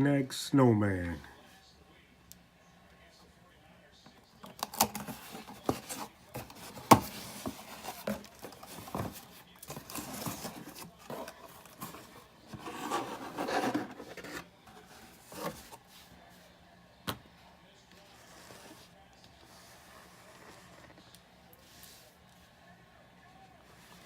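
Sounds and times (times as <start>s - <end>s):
packaging rustling: 4.4s - 14.5s.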